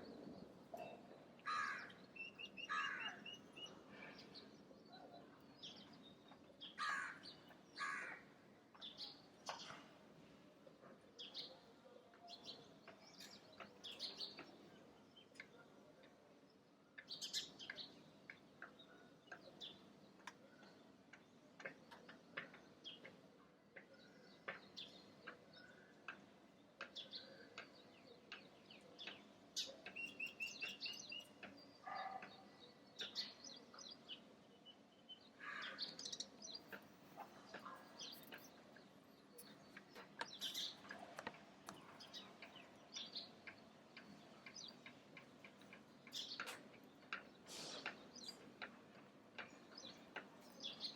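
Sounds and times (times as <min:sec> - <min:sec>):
birds chirping: 0:26.9 - 0:50.9.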